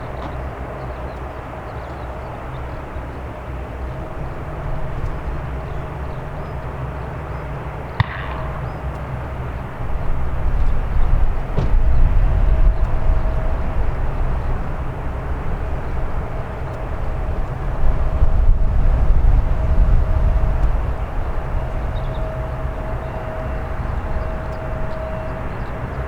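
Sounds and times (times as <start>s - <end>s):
faint jet engine whine: 0.0s - 26.0s
jet engines rumbling: 0.0s - 26.0s
sharp click: 8.0s - 9.1s.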